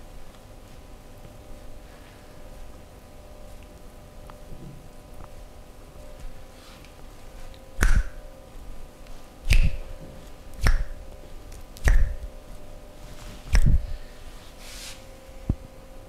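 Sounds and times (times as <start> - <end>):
hand slapping body: 7.8 - 8.2, 9.5 - 9.9, 10.6 - 11.0, 11.8 - 12.3, 13.5 - 13.8.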